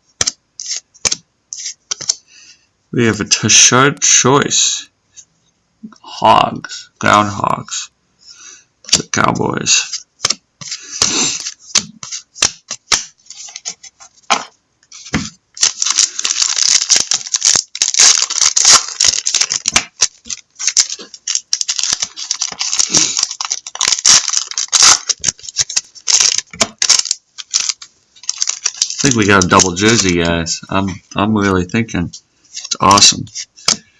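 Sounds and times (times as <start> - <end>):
cards being flipped through: 0.2 - 2.2, 10.2 - 30.2, 32.5 - 33.9
wrapper crinkling and tearing: 15.6 - 30.3.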